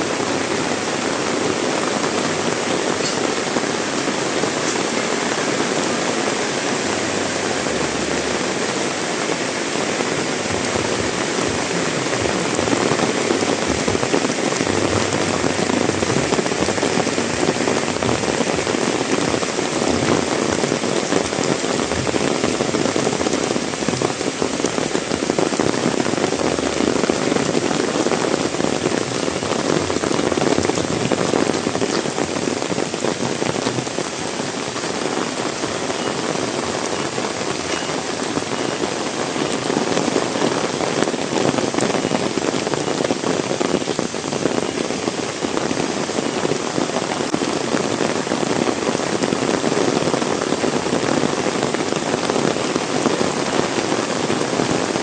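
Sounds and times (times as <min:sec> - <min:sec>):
heavy rain falling: 0:00.0 - 0:55.0.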